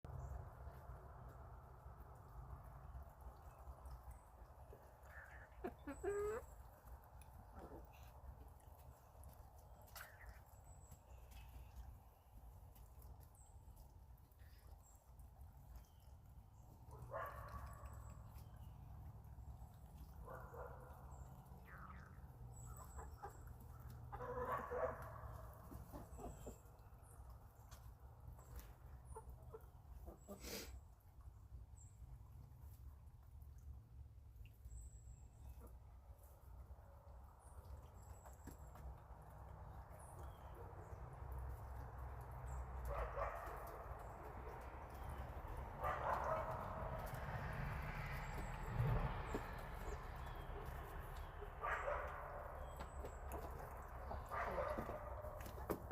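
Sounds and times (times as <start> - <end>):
chickens clucking: 4.6 - 11.0, 21.6 - 30.8, 52.6 - 55.9.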